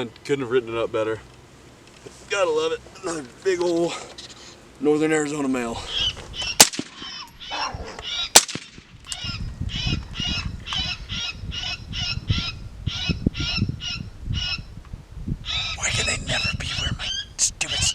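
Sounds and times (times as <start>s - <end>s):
sharp cracks: 6.5s - 7.3s, 8.3s - 9.2s.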